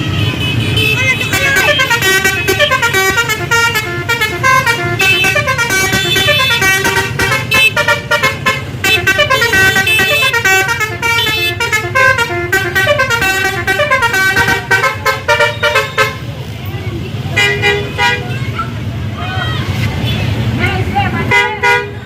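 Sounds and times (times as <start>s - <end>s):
bus horn playing a tune: 0.0s - 16.3s, 17.4s - 18.4s, 21.3s - 22.0s
bus engine running: 0.0s - 22.0s.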